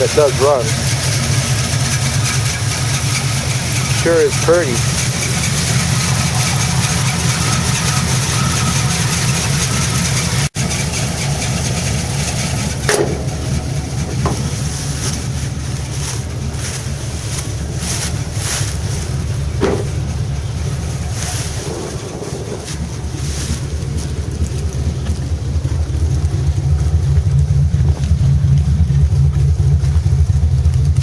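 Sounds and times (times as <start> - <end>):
old car engine idling: 0.0 - 31.0
wind buffeting microphone: 11.2 - 30.4.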